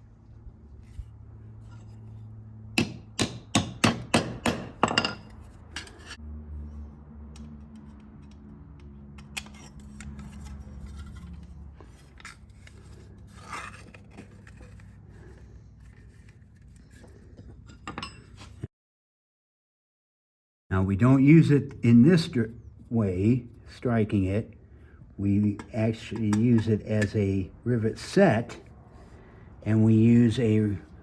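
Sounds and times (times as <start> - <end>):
metal clinking and scraping: 0.9 - 2.3, 4.8 - 6.2, 9.2 - 18.6
hammer striking rivet tool: 2.8 - 5.3.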